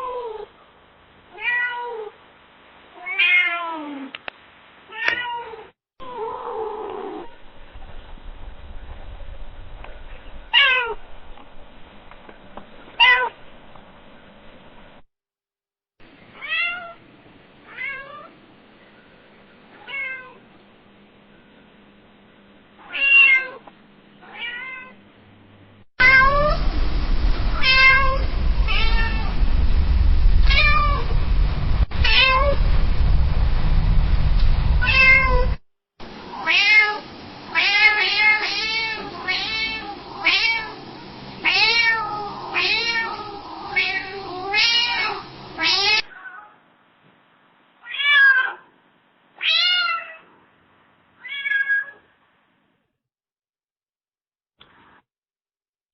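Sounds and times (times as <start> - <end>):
cat meowing: 1.3 - 2.2, 3.0 - 4.0, 4.9 - 7.4, 13.0 - 13.3, 22.8 - 23.6, 24.2 - 25.0, 26.0 - 26.6, 27.6 - 29.3, 30.5 - 31.1, 32.0 - 32.6, 34.8 - 35.5, 36.4 - 40.7, 41.4 - 46.6, 47.8 - 48.7, 49.4 - 50.3, 51.2 - 52.1
loud low rumble: 7.2 - 15.0, 26.0 - 36.4, 38.4 - 45.7.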